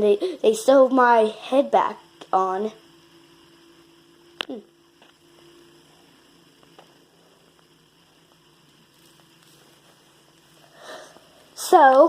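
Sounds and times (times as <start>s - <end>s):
low room hum: 0.0s - 12.0s.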